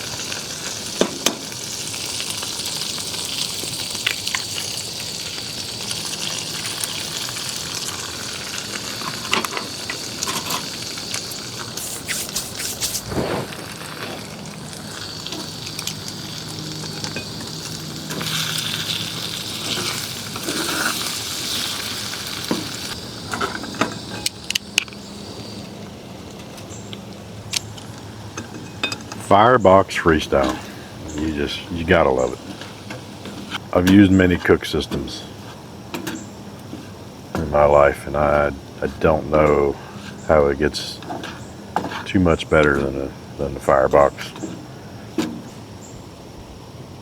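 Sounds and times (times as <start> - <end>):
food sizzling in a pan: 0.0 - 26.0
utensil scraping a pan: 11.8 - 14.3.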